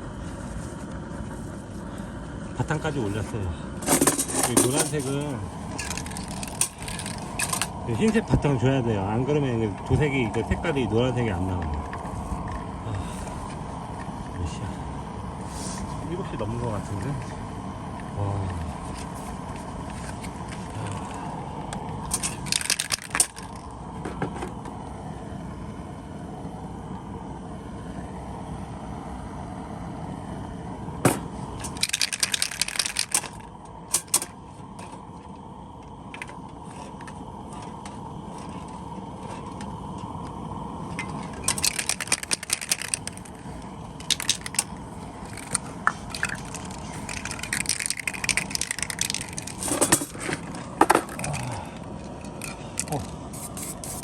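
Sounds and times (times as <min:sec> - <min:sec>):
low hum: 0:00.0 - 0:54.0
spray gun hissing: 0:53.3 - 0:54.0.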